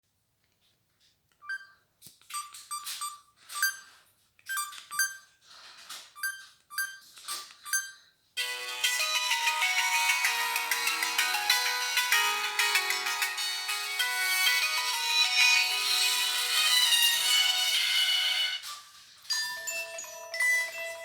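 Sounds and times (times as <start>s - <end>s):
ringtone melody: 2.4s - 3.9s, 6.2s - 18.7s, 19.3s - 21.0s.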